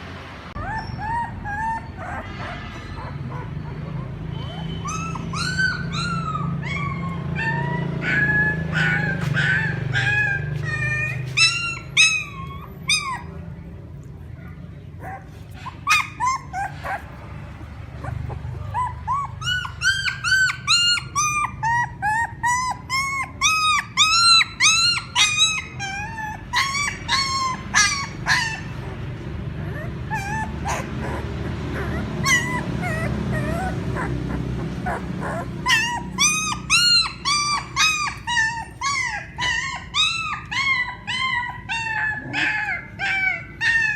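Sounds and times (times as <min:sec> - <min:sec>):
puppy whimpering: 0:00.5 - 0:43.9.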